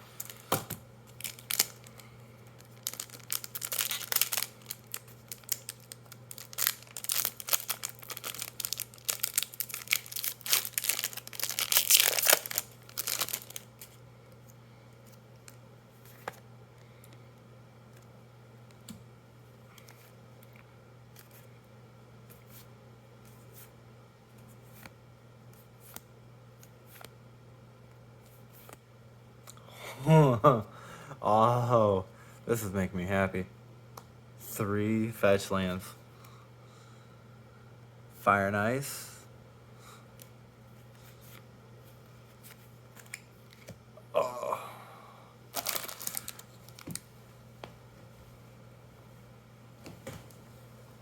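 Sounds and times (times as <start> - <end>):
foil wrapper tearing and crinkling: 1.1 - 2.0, 2.6 - 14.0, 45.5 - 47.0.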